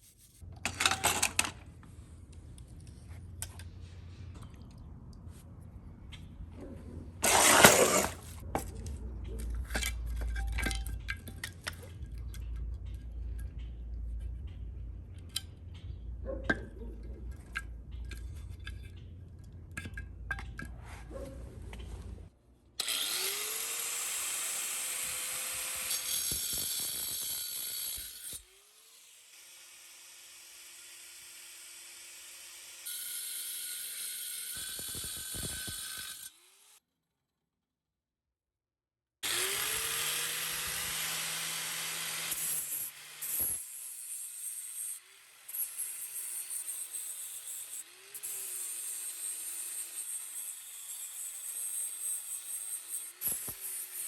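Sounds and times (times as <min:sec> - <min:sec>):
power tool whining: 0:07.2 - 0:08.4, 0:22.8 - 0:29.4, 0:39.2 - 0:54.0.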